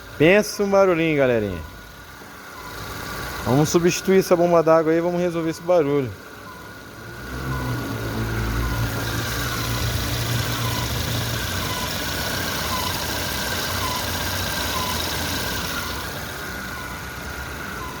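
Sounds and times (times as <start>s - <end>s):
car engine idling: 0.0s - 18.0s
water pump squeaking: 8.6s - 18.0s.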